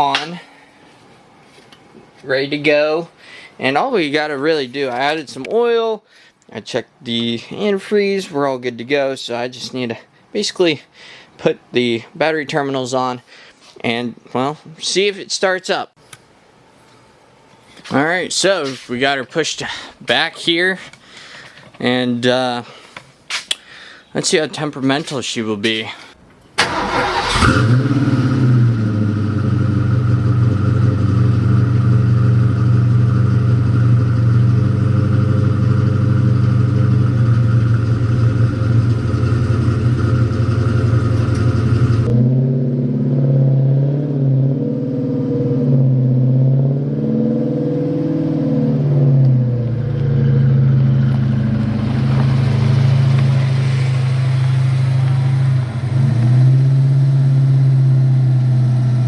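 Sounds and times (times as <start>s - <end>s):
car engine starting and revving: 26.6s - 59.0s.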